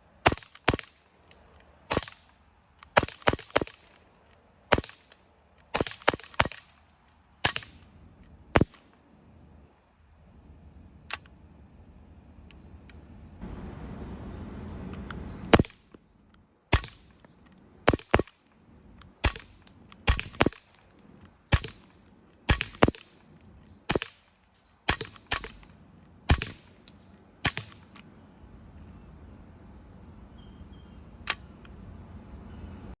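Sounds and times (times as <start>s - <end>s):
air pistol shots: 0.2s - 1.1s, 1.9s - 4.0s, 4.7s - 7.9s, 8.5s - 8.9s, 15.5s - 15.9s, 16.7s - 20.9s, 21.5s - 28.0s.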